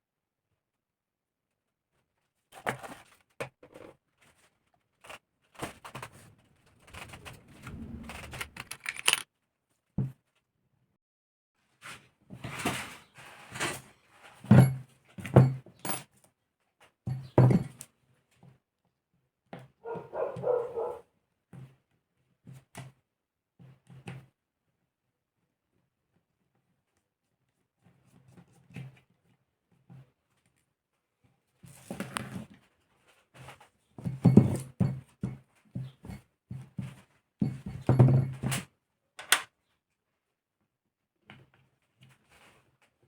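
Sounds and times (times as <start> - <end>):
metal parts and tools clinking: 8.2 - 9.2.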